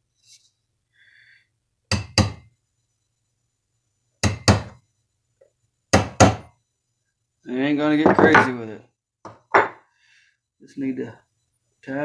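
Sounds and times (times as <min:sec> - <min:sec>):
hammer tapping metal punch: 0:01.9 - 0:02.5, 0:04.2 - 0:04.8, 0:06.0 - 0:06.5.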